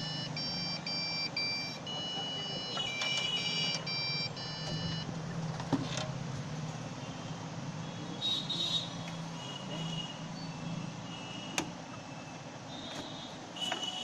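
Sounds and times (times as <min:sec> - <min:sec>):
computer motherboard beeping: 0:00.0 - 0:05.1.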